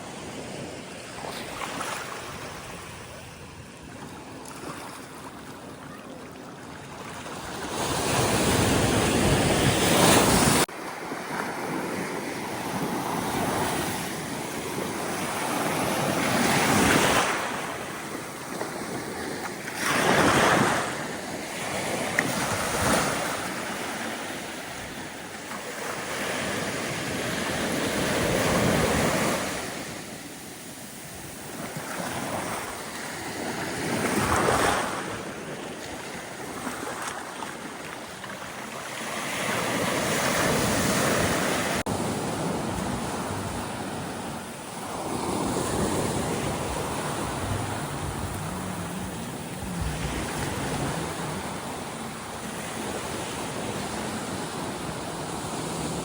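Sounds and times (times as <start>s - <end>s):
ocean surf washing onto beach: 7.5s - 56.0s
wind rumbling on microphone: 40.5s - 55.4s.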